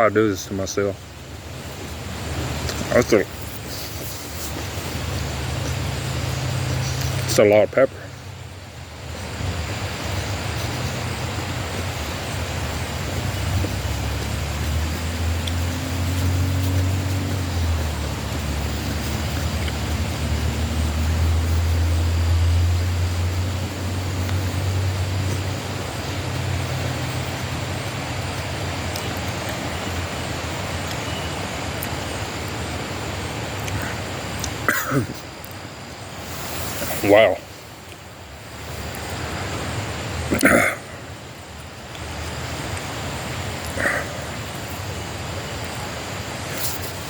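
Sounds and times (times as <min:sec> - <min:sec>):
background hiss: 0:00.0 - 0:47.0
motor vehicle running: 0:00.9 - 0:47.0.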